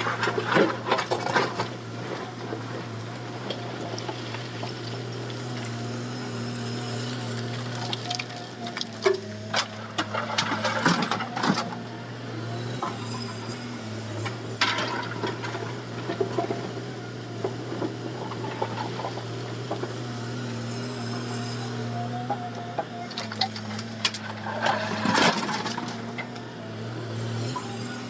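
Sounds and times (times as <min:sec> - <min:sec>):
excavator engine humming: 0:00.0 - 0:28.0
clanks and knocks: 0:14.5 - 0:16.8.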